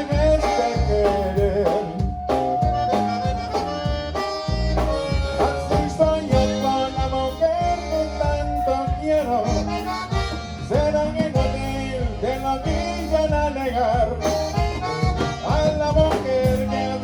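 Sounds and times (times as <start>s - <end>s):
accordion: 0.0s - 17.0s
bass and drums beat: 0.0s - 17.0s.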